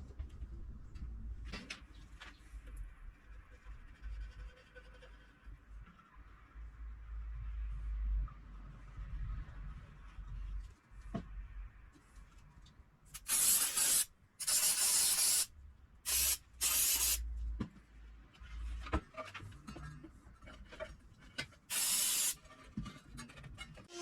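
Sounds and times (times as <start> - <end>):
short bursts of hissing spray: 13.2 - 15.5, 16.1 - 17.2, 21.7 - 22.4.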